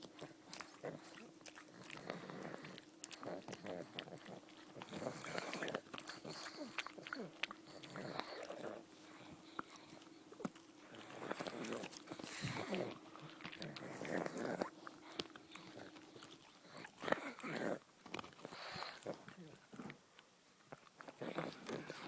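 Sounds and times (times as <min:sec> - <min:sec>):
dog chewing or smacking: 0:00.0 - 0:22.0.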